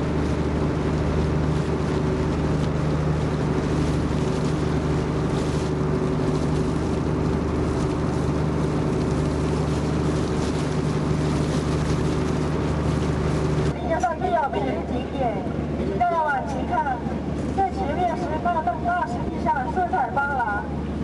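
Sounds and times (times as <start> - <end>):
boat engine humming: 0.0 - 21.0
water wash: 0.0 - 21.0
wind: 0.0 - 21.0.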